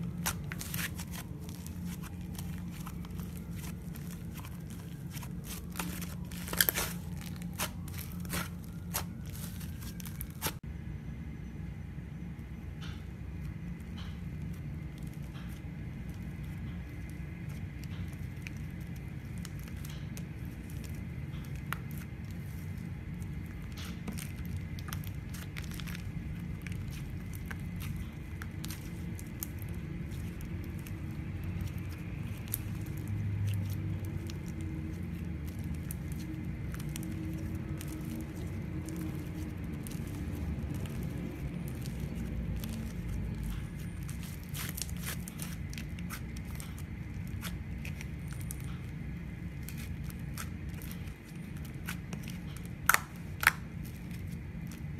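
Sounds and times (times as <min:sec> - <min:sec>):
slime squished by hand: 0:00.0 - 0:10.6, 0:17.0 - 0:54.9
sticky pops and crackles: 0:16.1 - 0:54.9.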